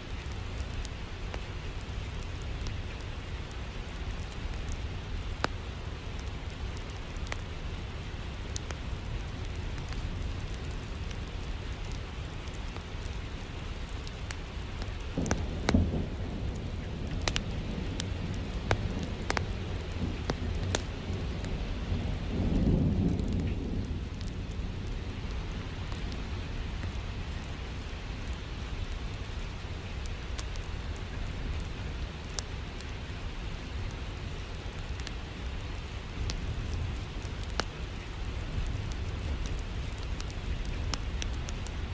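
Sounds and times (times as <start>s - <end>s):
steady rain: 0.0s - 41.9s
wood fire crackling: 0.0s - 41.9s
thunder rolling: 15.2s - 25.7s.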